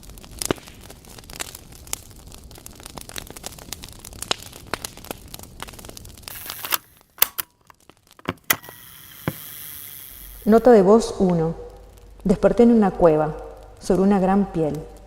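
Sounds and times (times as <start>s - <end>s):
dense crackling: 0.0s - 15.0s
short hiss: 6.3s - 7.4s, 8.4s - 10.7s
sharp clicks: 6.3s - 10.8s.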